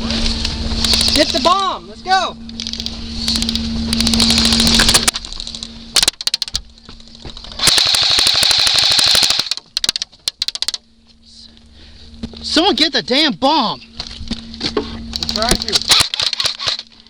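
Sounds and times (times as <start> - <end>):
airsoft guns firing: 7.6 - 9.6, 15.9 - 16.9.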